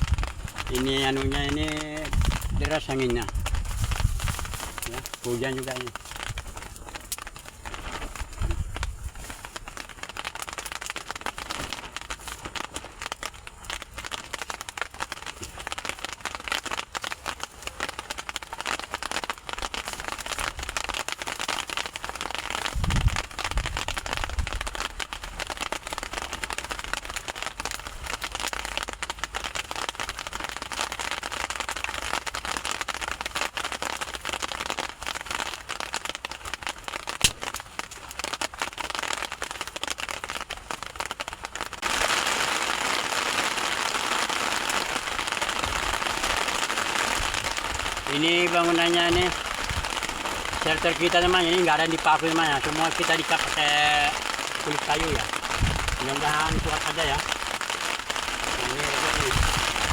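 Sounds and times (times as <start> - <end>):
wind gusts buffeting microphone: 0.0 - 5.2, 8.1 - 9.3, 22.7 - 24.7, 54.8 - 57.4, 58.3 - 59.9
heavy rain pattering: 0.0 - 59.9.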